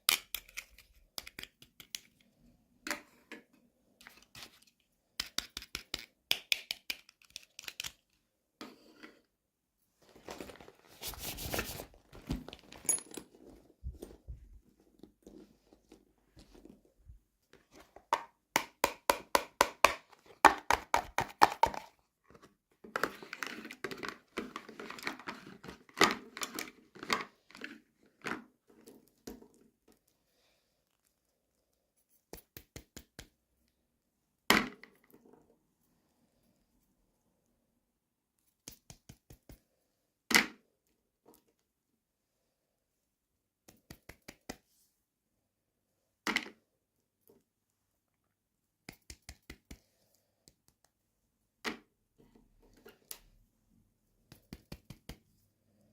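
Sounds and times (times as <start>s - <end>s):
plastic and cardboard crinkling: 10.0s - 14.4s.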